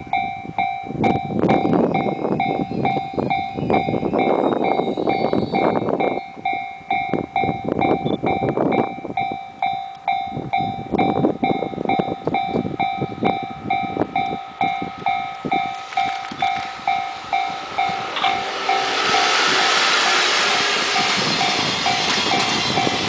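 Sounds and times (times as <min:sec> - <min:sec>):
rushing noise of passing train: 0:00.0 - 0:23.0
train wheels knocking on rail joints: 0:14.2 - 0:23.0.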